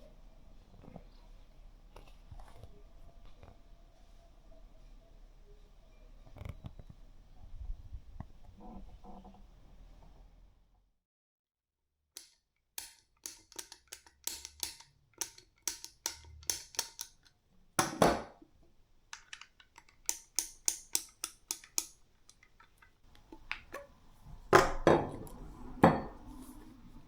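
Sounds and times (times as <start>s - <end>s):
clicks of small hard parts: 12.2s - 18.3s, 19.1s - 23.9s.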